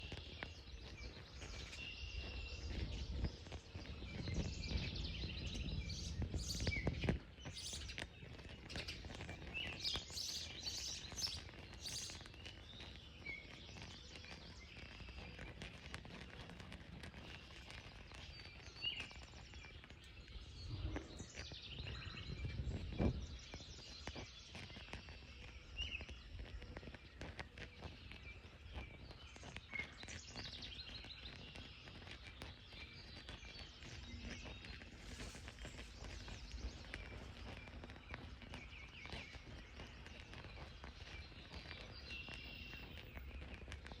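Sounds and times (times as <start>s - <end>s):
birds chirping: 0.0s - 44.0s
steady low rumble: 20.5s - 22.4s.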